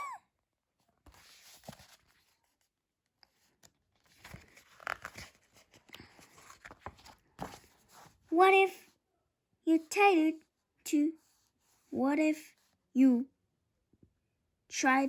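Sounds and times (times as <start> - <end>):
paper pages turning: 0.9 - 8.2.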